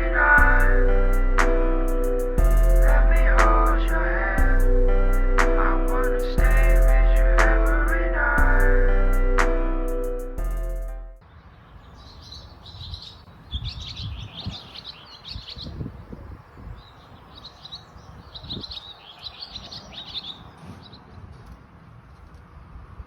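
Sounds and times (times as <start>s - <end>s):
low rumble: 0.0s - 11.2s
small songbirds twittering: 11.3s - 21.0s.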